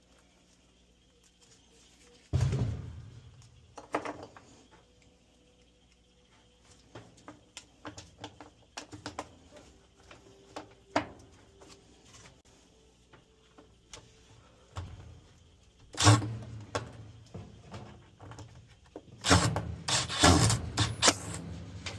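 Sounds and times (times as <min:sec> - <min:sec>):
tools and parts clicking and knocking: 0:03.4 - 0:05.2, 0:06.9 - 0:11.3, 0:15.9 - 0:21.9.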